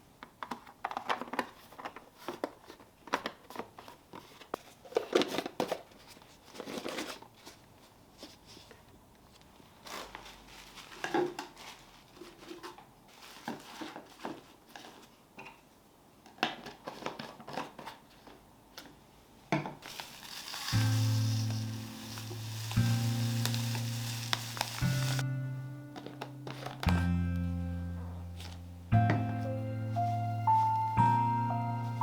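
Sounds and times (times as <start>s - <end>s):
packaging rustling: 0.4s - 7.6s, 9.8s - 15.2s, 19.8s - 25.2s.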